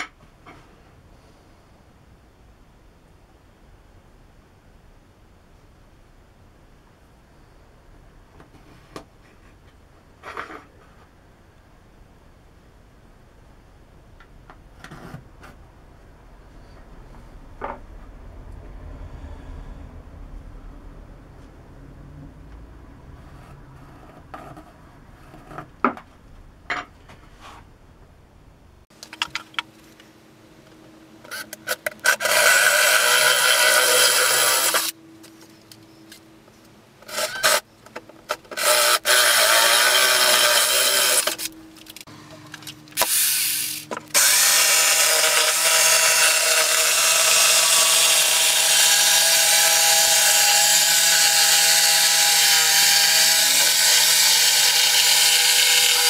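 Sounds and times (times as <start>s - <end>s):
power tool cutting: 32.0s - 35.0s, 38.4s - 41.5s, 43.0s - 56.0s.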